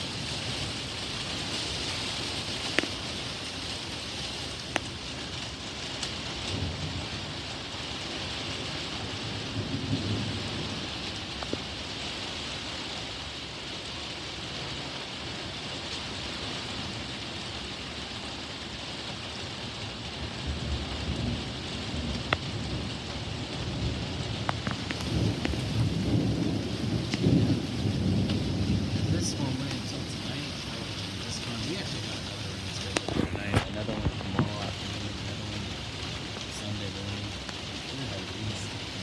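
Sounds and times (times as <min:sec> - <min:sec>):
thunder rumbling: 0:00.0 - 0:11.8, 0:20.2 - 0:39.0
raindrops ticking close by: 0:00.0 - 0:39.0
steady rain: 0:00.0 - 0:39.0.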